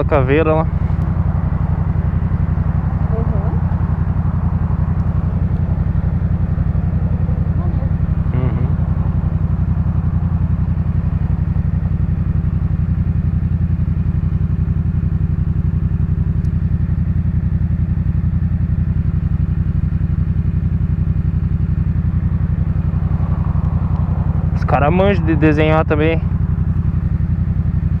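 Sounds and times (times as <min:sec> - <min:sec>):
motorcycle engine idling: 0:00.0 - 0:28.0.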